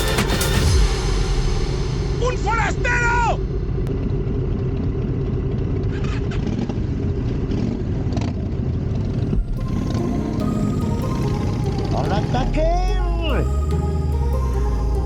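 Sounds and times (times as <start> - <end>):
vehicle engine and road noise: 3.4 - 15.0.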